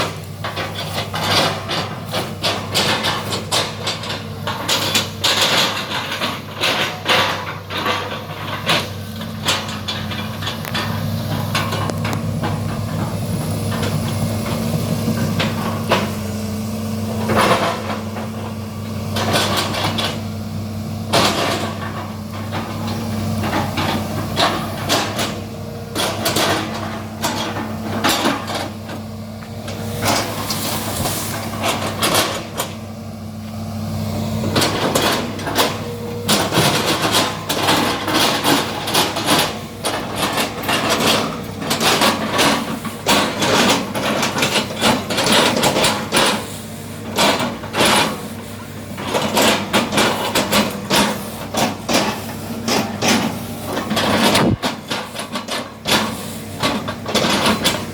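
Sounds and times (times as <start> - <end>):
excavator diesel engine: 0.0 - 57.9.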